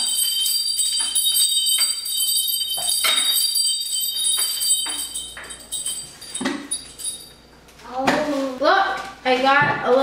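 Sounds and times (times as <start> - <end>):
small metal chime tinkling: 0.0 - 7.5.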